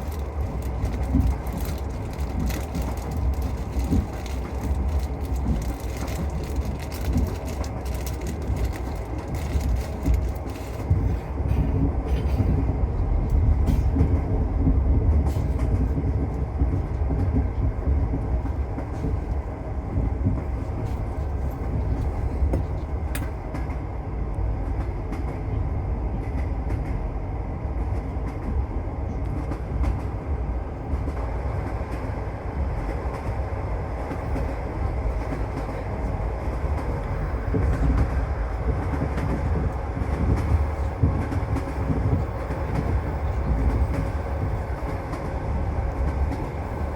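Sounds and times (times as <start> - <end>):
faint clicks over rail joints: 0.0 - 12.6
train wheels rumbling on rails: 0.0 - 46.9.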